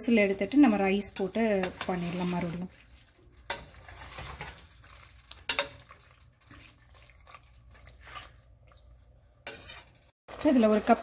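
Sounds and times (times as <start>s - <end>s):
water pouring into pot: 1.9s - 9.1s.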